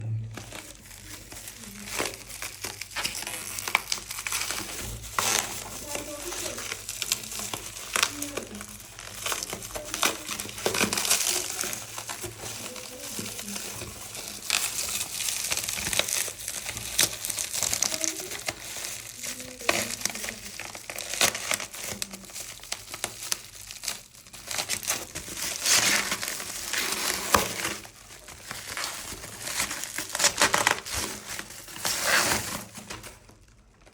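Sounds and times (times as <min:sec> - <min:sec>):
packaging crinkling and rustling: 0:00.1 - 0:33.9.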